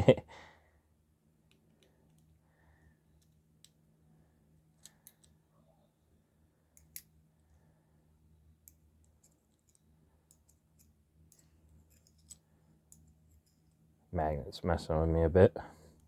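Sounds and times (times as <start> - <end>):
metallic clicks of handcuff key: 4.8 - 5.4, 6.8 - 7.1, 8.7 - 13.6.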